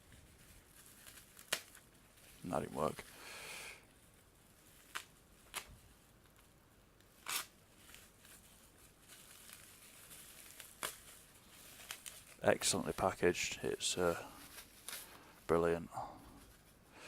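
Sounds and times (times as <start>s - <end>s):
packaging tearing rustle: 0.0s - 3.1s, 4.5s - 6.5s, 7.1s - 13.5s
plastic packaging clicks and snaps: 1.0s - 1.9s, 4.8s - 6.4s, 10.3s - 11.1s.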